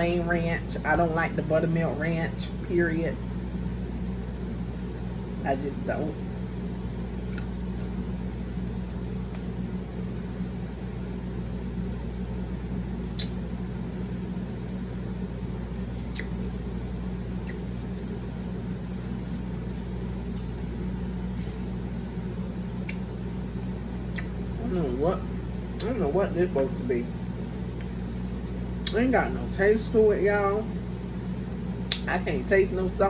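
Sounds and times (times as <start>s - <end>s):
low hum: 0.0s - 33.0s
person chewing vegetables: 13.1s - 14.2s, 15.8s - 24.6s.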